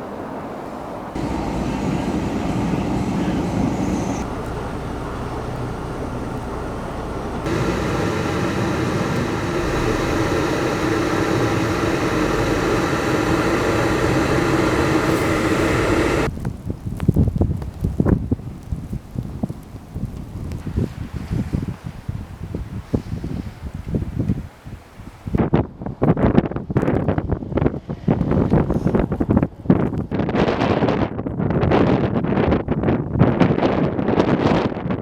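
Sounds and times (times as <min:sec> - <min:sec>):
road noise: 0:00.0 - 0:16.3
wind buffeting microphone: 0:00.9 - 0:35.0
vehicle engine: 0:01.2 - 0:16.3.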